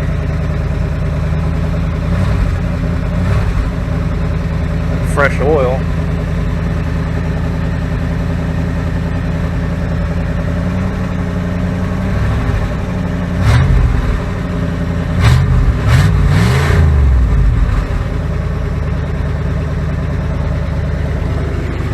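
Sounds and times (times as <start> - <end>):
car engine idling and revving: 0.0 - 21.9.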